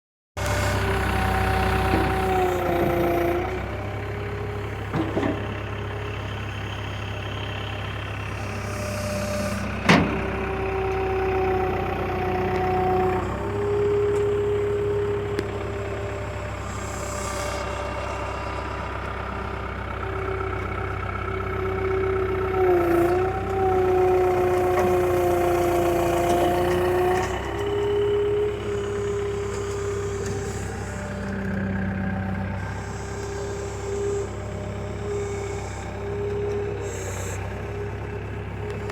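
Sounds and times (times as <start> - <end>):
backhoe engine running: 0.4 - 38.9.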